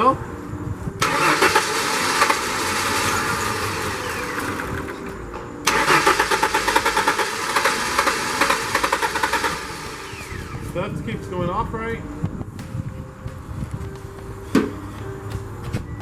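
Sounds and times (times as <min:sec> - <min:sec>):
starter cranking engine: 0:01.0 - 0:05.0, 0:05.6 - 0:11.1.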